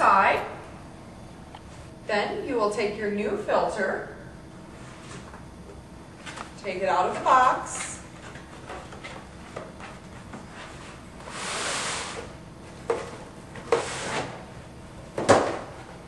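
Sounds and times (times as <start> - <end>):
filter sliding scrape: 11.2 - 12.3.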